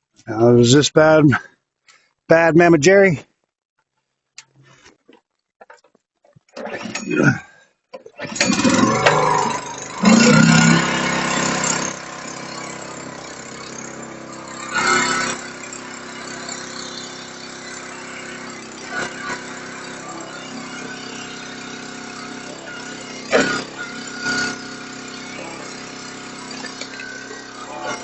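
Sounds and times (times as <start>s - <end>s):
small petrol engine running: 8.1s - 28.0s.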